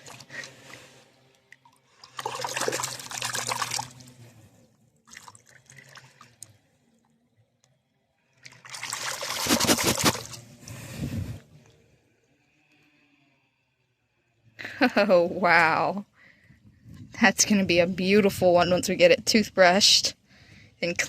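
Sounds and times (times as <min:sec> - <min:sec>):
water dribbling: 0:00.0 - 0:04.2, 0:04.9 - 0:07.2, 0:08.3 - 0:10.4
water splashing and swishing: 0:00.0 - 0:12.4.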